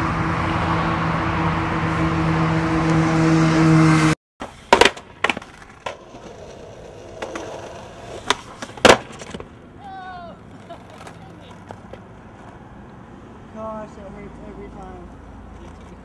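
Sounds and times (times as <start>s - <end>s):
skateboard wheels rolling on pavement: 0.0s - 16.0s
skateboard clacking on ground: 4.4s - 12.6s, 14.7s - 16.0s.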